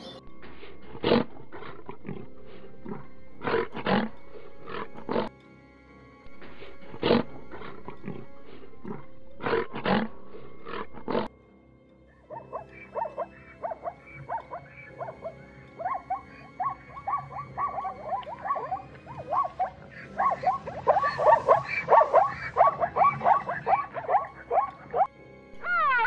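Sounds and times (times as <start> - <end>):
chorus of animal calls: 0.0 - 5.3, 6.3 - 11.3, 12.1 - 26.0
drawn-out animal call: 12.3 - 26.0.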